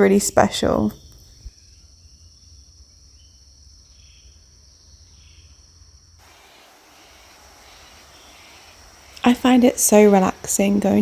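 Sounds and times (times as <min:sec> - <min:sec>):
high insect drone: 0:01.2 - 0:11.0
even hiss: 0:06.2 - 0:11.0
faint bird calls: 0:06.3 - 0:11.0.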